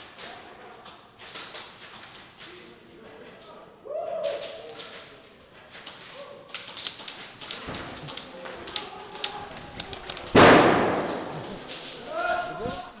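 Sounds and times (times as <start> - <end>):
airsoft gunshots: 9.7 - 13.0
loud bang: 10.3 - 11.8.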